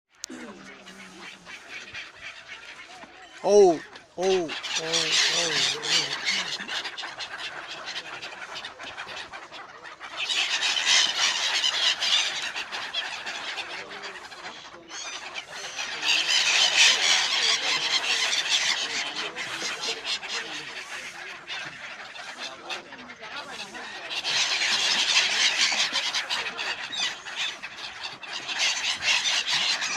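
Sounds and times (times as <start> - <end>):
flock of birds calling: 0.1 - 29.9.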